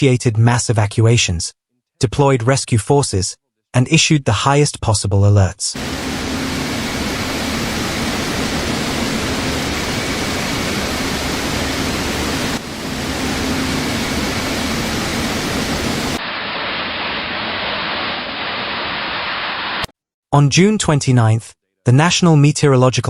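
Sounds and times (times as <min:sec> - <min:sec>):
floodwater rushing: 0:05.8 - 0:19.4.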